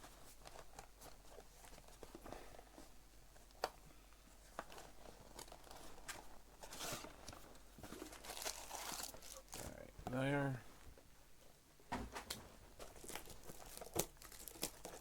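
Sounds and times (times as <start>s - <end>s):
packaging crinkling and tearing: 8.0s - 9.8s, 12.8s - 15.0s.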